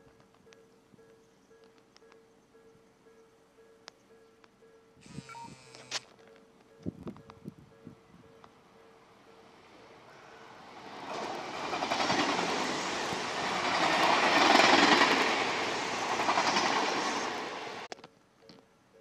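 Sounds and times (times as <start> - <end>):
crossing warning bell: 0.0 - 10.7
electric train passing: 8.6 - 17.9
train wheel clatter: 11.0 - 17.9.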